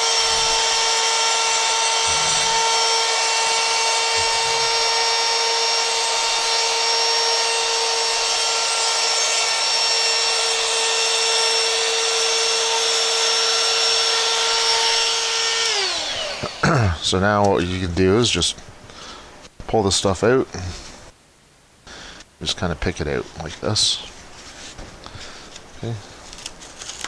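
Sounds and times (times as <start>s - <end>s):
router high-pitched whine: 0.0s - 17.0s.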